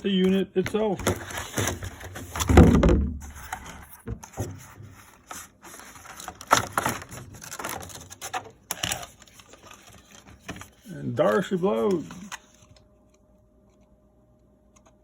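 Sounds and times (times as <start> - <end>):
plastic packaging crinkling: 5.2 - 12.8.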